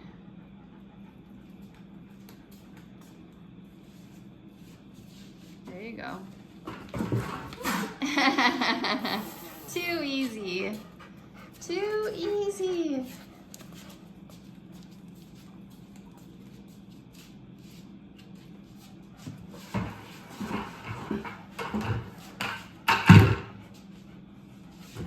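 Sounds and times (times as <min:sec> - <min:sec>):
objects knocking and scraping: 0:06.6 - 0:07.9, 0:19.6 - 0:23.5.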